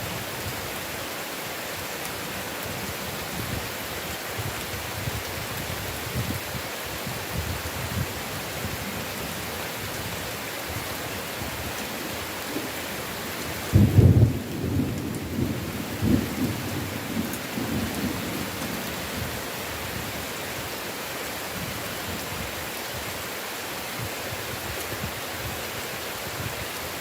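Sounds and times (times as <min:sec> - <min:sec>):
heavy rain: 0:00.0 - 0:27.0
thunder rumbling: 0:13.6 - 0:18.8.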